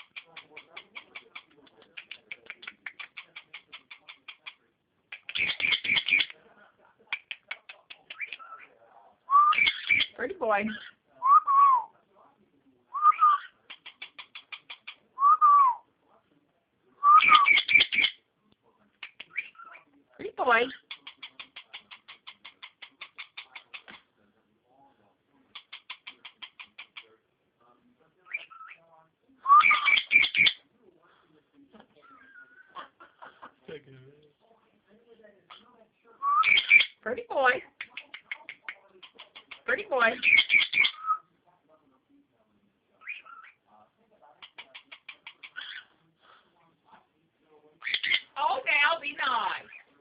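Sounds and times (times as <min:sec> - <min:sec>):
small birds chirping: 0:00.0 - 0:06.4, 0:07.0 - 0:11.1, 0:12.5 - 0:15.2, 0:17.0 - 0:27.2, 0:27.9 - 0:30.7, 0:35.5 - 0:41.3, 0:42.9 - 0:46.7, 0:47.7 - 0:50.0.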